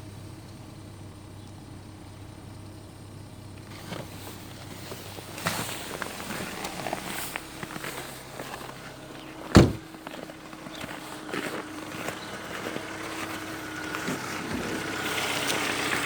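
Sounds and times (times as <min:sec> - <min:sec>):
car engine humming: 0:00.0 - 0:16.0
footsteps: 0:03.9 - 0:16.0
loud thump: 0:09.5 - 0:10.0.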